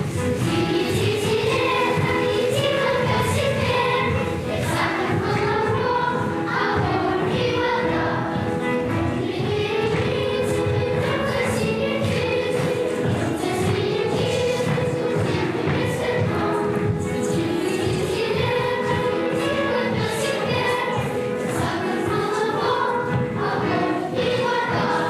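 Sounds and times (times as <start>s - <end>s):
children's choir singing: 0.0s - 25.0s
musical accompaniment: 0.0s - 25.0s.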